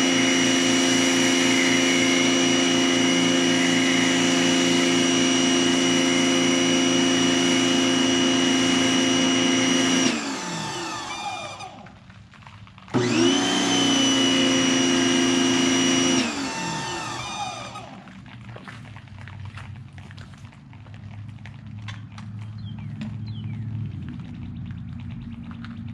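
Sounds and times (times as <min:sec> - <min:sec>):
electric pressure washer whining: 0:00.0 - 0:12.0, 0:12.9 - 0:18.3.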